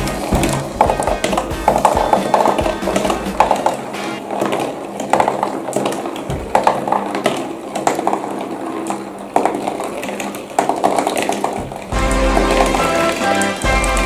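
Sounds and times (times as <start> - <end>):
music: 0.0 - 4.3, 11.9 - 14.0
marbles rattling along cardboard run: 0.0 - 14.0.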